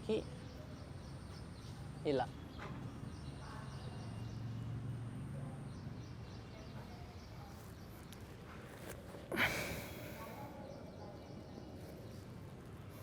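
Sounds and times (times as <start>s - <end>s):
person exhaling forcefully: 9.3s - 10.2s.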